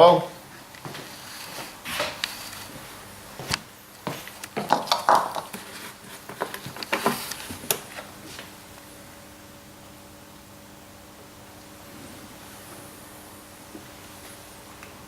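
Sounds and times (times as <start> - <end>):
faint hum: 5.5 - 15.0.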